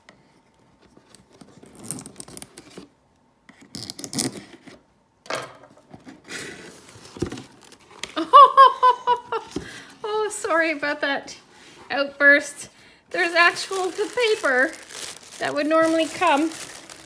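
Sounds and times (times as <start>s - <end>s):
cardboard cutting and tearing: 13.2s - 17.0s.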